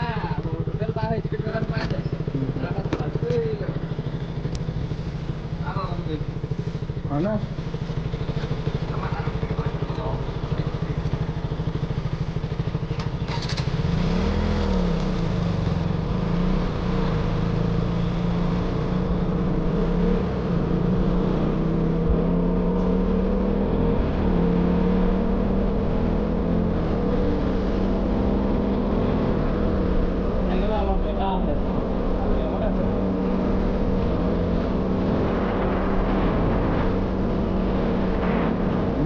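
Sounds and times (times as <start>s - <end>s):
motorcycle engine: 0.0s - 39.0s.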